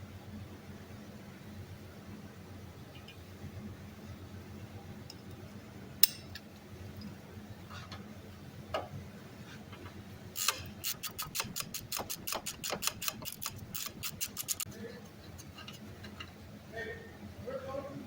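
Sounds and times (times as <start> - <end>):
hand ratchet clicking: 10.4 - 14.7.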